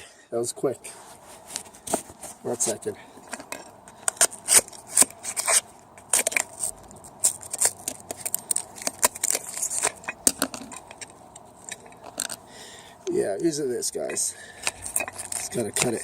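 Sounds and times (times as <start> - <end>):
metal hand tools clinking: 14.0 - 16.0.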